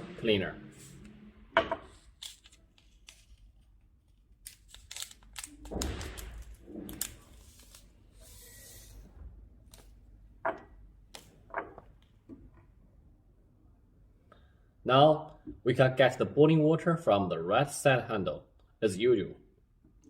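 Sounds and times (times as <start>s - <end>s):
sachet rustling: 1.9s - 9.0s.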